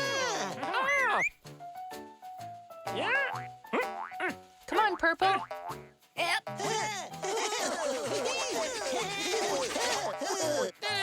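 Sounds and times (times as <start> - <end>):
playful cartoon music: 0.0 - 11.0.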